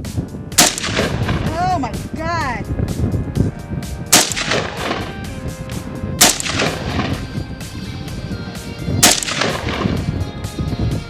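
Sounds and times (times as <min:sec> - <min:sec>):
rifle shots with echo: 0:00.6 - 0:01.5, 0:04.1 - 0:05.4, 0:06.2 - 0:07.4, 0:09.0 - 0:10.2.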